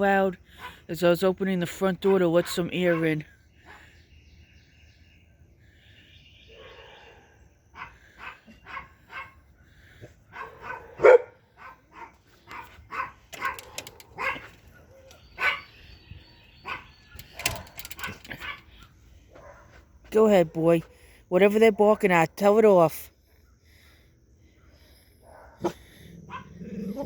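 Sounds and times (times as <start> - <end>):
dogs barking: 0.5 - 0.9, 2.0 - 4.0, 6.5 - 15.9, 16.6 - 19.8, 25.2 - 27.0
bird singing faintly: 10.4 - 25.7.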